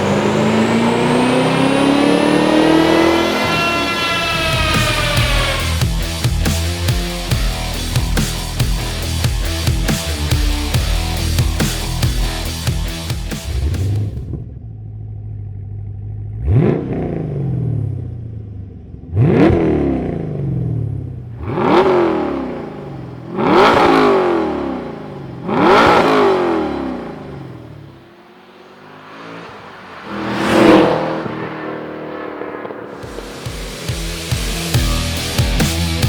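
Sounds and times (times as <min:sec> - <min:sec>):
car engine idling and revving: 0:00.0 - 0:36.0.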